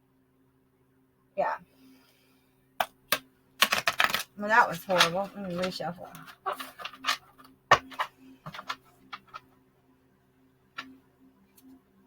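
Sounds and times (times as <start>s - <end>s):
cards being shuffled: 3.6s - 9.4s.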